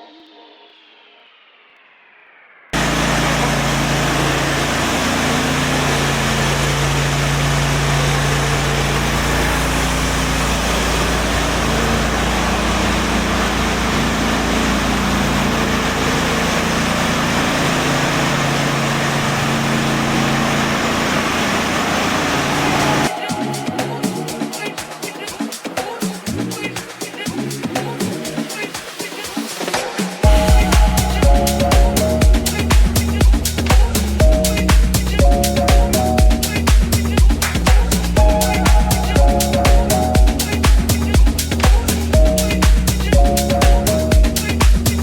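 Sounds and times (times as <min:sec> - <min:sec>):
concrete grinder grinding: 0:02.8 - 0:23.1
low motor hum: 0:02.8 - 0:23.1, 0:30.2 - 0:45.0.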